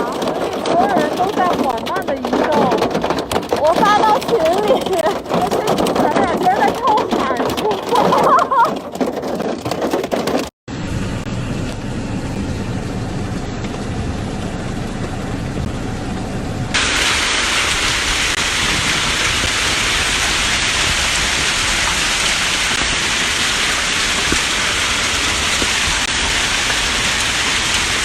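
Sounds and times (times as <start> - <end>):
heavy rain and hail: 0.0 - 10.4, 16.7 - 28.0
deep rumble: 10.7 - 28.0.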